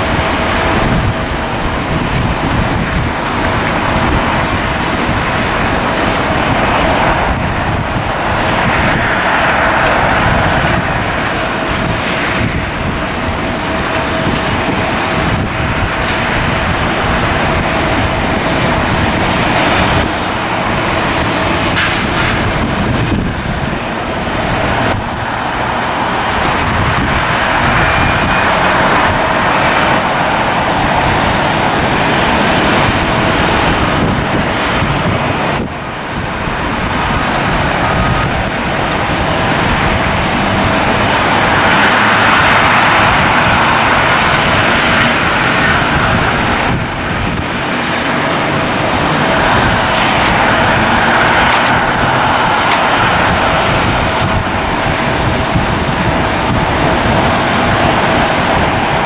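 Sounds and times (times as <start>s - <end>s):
airliner engines whining: 0.0s - 59.0s
wind buffeting on microphone: 0.0s - 59.0s.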